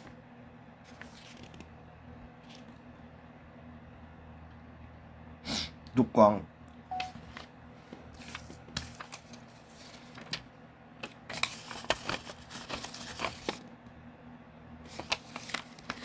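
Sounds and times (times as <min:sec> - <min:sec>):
paper rustling and crinkling: 0:00.8 - 0:01.7, 0:02.4 - 0:02.8, 0:07.0 - 0:13.7, 0:14.9 - 0:16.0.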